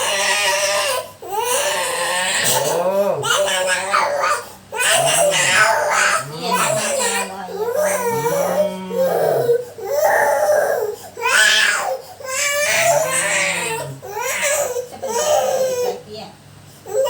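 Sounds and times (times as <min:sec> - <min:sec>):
small child crying: 0:00.0 - 0:16.0.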